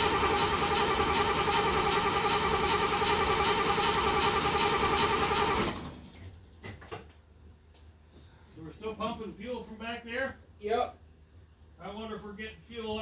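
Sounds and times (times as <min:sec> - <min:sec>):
starter motor cranking engine: 0:00.0 - 0:06.2.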